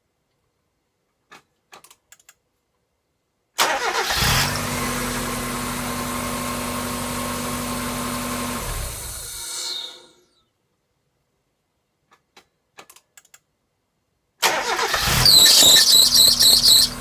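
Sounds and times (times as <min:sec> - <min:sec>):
car engine starting and idling: 0:03.6 - 0:09.5, 0:14.4 - 0:17.0.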